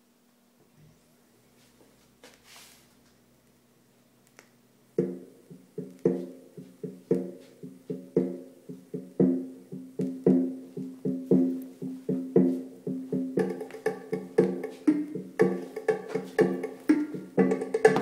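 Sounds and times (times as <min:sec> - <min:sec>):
plucked-string tune over a beat: 0:05.0 - 0:18.0.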